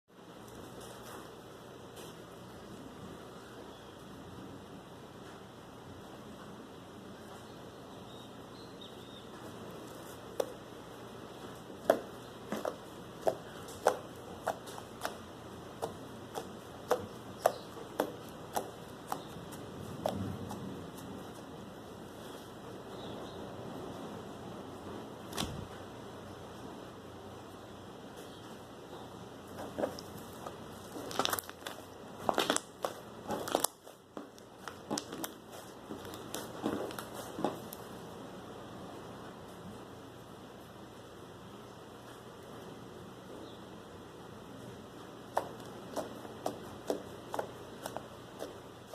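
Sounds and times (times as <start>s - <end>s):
slime squishing: 11.7s - 21.4s, 29.5s - 37.9s, 45.3s - 48.9s.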